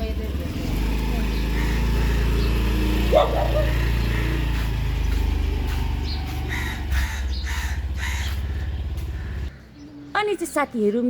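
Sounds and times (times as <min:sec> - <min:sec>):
motor scooter engine humming: 0:00.0 - 0:09.5
crows cawing: 0:01.4 - 0:02.8, 0:03.5 - 0:09.7.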